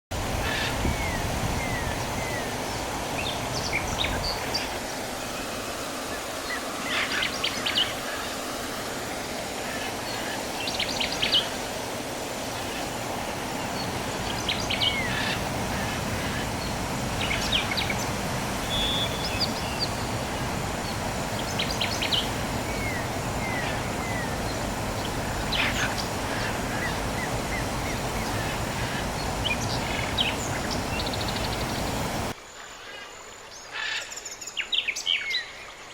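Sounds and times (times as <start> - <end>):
birds chirping: 12.6 - 32.3.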